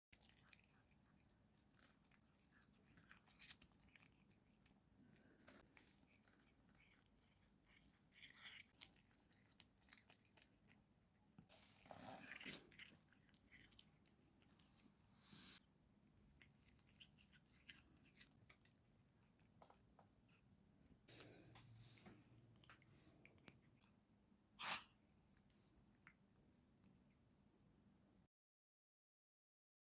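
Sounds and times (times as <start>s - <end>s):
cat sneezing: 24.6s - 25.0s.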